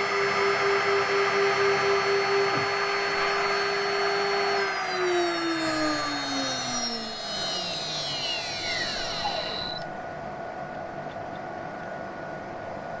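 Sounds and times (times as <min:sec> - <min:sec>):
router spindle whine winding down: 0:00.0 - 0:10.0
steady hum: 0:05.5 - 0:11.0.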